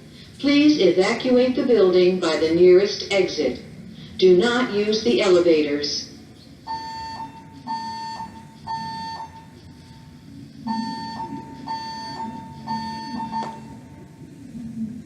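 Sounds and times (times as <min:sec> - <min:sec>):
fire alarm beeping: 0:06.6 - 0:13.9.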